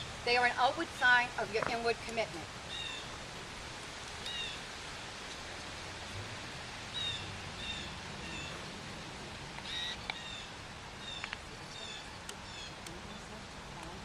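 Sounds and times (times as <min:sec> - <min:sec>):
steady outdoor hiss: 0:00.0 - 0:14.0
small bird chirping: 0:04.2 - 0:04.6, 0:09.6 - 0:12.9.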